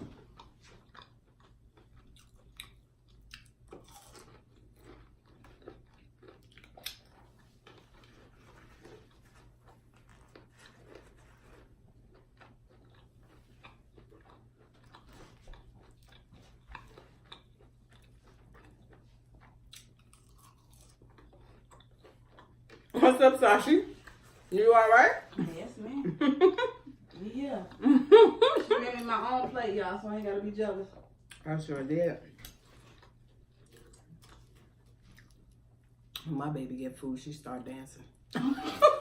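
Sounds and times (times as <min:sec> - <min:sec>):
crunchy chewing: 0:00.1 - 0:23.0, 0:32.4 - 0:36.2.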